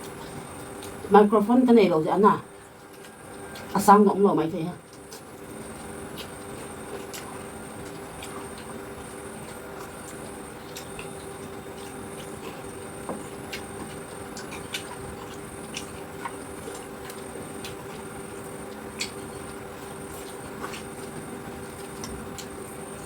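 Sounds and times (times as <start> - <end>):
steady background hum: 0.0 - 23.0.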